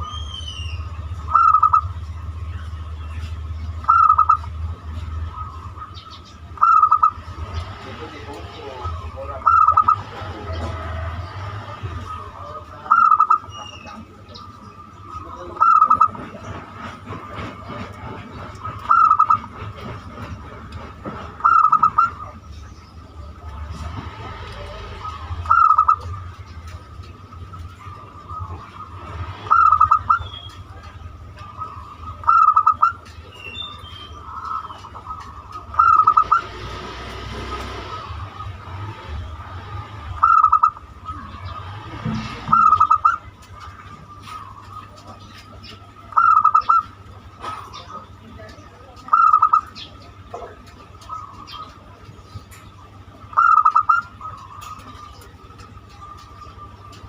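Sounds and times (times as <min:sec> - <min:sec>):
dove cooing: 0:01.2 - 0:01.9, 0:03.8 - 0:04.6, 0:06.5 - 0:07.6, 0:08.5 - 0:13.6, 0:18.2 - 0:22.4, 0:24.6 - 0:33.4, 0:34.2 - 0:48.2, 0:48.9 - 0:57.0.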